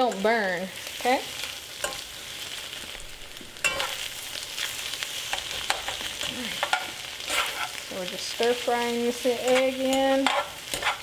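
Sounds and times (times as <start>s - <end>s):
food sizzling in a hot pan: 0.0s - 11.0s
utensil scraping and knocking a pan: 9.5s - 11.0s.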